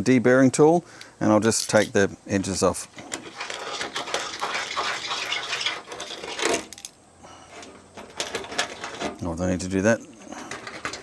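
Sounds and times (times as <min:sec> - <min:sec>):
blade scraping metal edges: 0:03.1 - 0:06.9.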